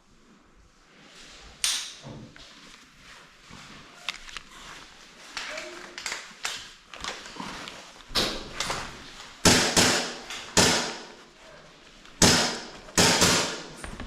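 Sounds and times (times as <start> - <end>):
sharp knocks and cracks echoing: 9.4 - 11.2, 12.2 - 14.0.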